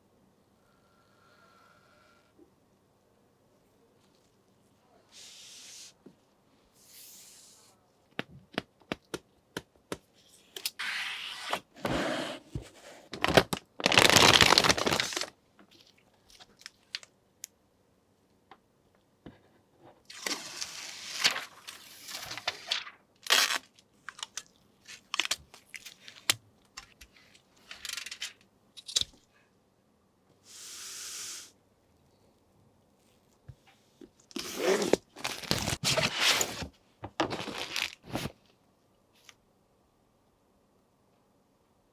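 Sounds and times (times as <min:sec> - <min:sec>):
packaging crinkling and tearing: 0:13.1 - 0:17.1, 0:20.1 - 0:26.4, 0:34.3 - 0:38.4.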